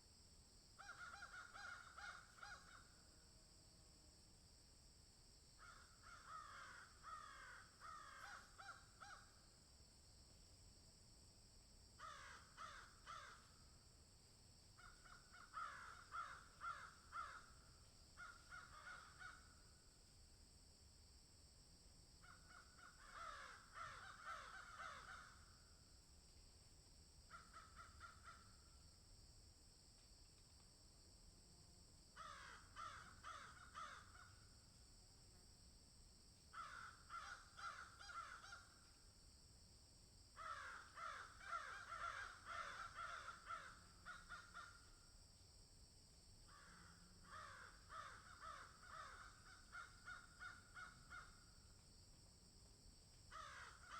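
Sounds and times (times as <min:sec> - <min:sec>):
crows cawing: 0:00.8 - 0:02.9, 0:05.6 - 0:09.3, 0:12.0 - 0:13.6, 0:14.8 - 0:17.6, 0:18.2 - 0:19.6, 0:22.2 - 0:25.5, 0:27.3 - 0:28.5, 0:32.2 - 0:34.4, 0:36.5 - 0:38.8, 0:40.4 - 0:44.9, 0:46.5 - 0:51.4, 0:53.3 - 0:53.9.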